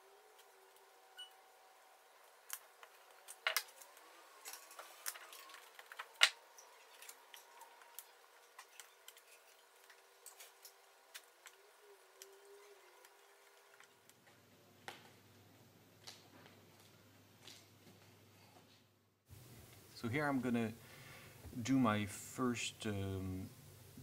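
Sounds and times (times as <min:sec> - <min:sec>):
wood pieces and tool clicking on board: 0:02.4 - 0:12.4.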